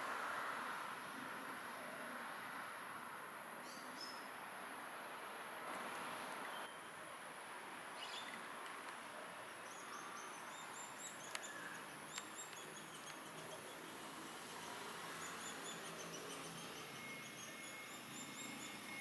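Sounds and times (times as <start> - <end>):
woodpeckers chirping: 9.5 - 18.4.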